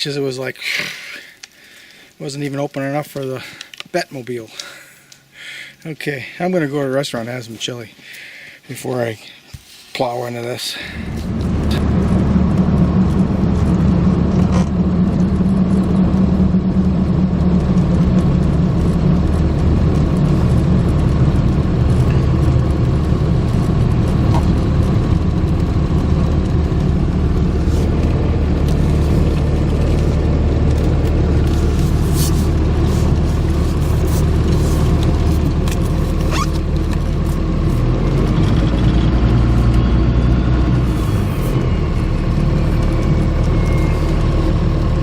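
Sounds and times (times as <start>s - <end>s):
truck engine rumbling: 10.0s - 45.0s.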